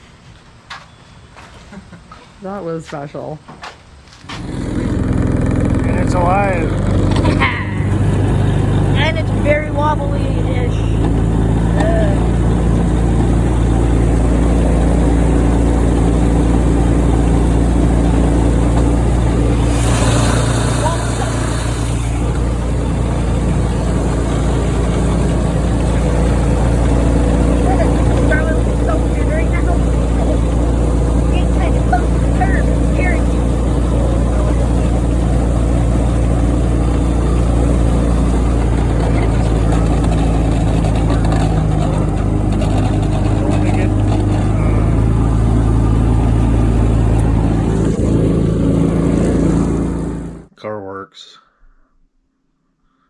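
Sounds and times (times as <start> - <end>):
small car engine running: 4.2 - 50.5.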